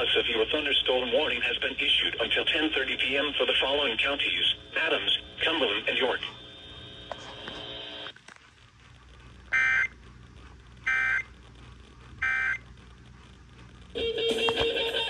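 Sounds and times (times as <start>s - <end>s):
guitar music: 14.0s - 15.0s.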